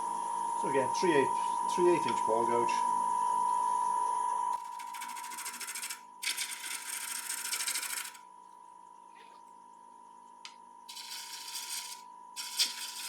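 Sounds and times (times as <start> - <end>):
bowl gouge cutting wood: 4.6 - 8.2, 10.9 - 13.0
wood lathe whining: 4.6 - 8.2, 10.9 - 13.0.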